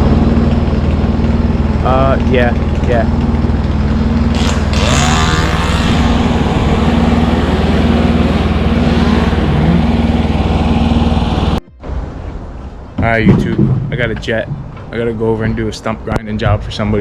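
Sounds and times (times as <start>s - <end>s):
large engine idling: 0.0s - 11.6s.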